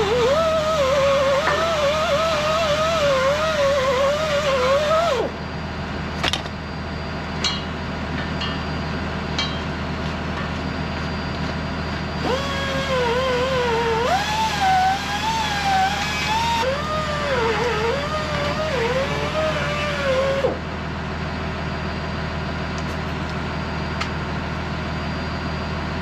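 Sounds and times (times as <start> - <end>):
diesel engine running: 0.0 - 26.0
hydraulic whine: 0.0 - 26.0
sharp metal clanks: 7.4 - 9.8.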